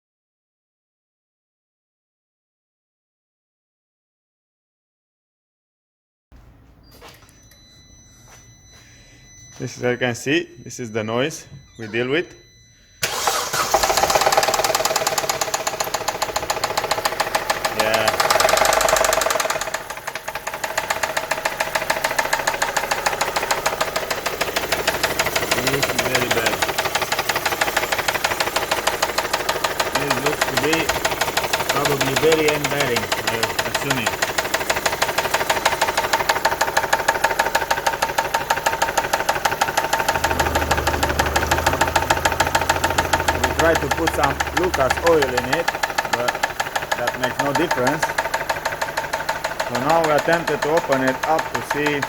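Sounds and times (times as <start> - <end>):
car engine running: 11.6 - 52.0
fast regular engine knock: 13.1 - 52.0.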